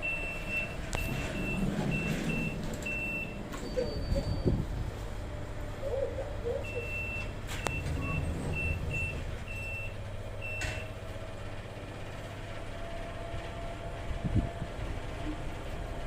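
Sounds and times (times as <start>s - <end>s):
elevator beeps: 0.0s - 5.0s, 6.6s - 11.0s
lift hum: 0.0s - 16.0s.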